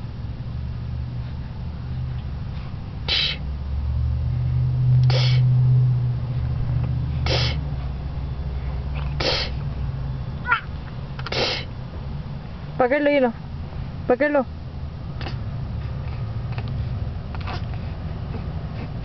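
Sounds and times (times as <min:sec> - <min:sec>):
low hum inside car: 0:00.0 - 0:19.0
baby puffing and snorting: 0:02.5 - 0:03.4, 0:05.0 - 0:05.5, 0:07.2 - 0:07.6, 0:08.9 - 0:09.6, 0:11.2 - 0:11.7, 0:15.2 - 0:19.0.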